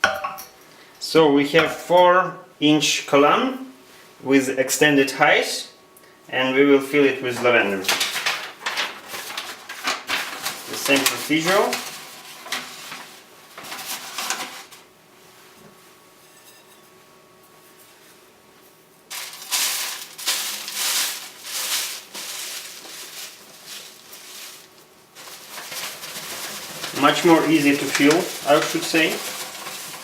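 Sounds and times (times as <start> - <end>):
lavender rustling and crackling: 7.3 - 16.8, 19.1 - 30.0.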